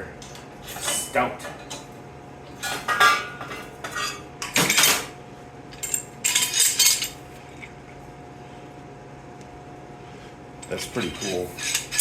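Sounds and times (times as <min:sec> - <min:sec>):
steel clamps clanking on metal: 0:10.9 - 0:12.0.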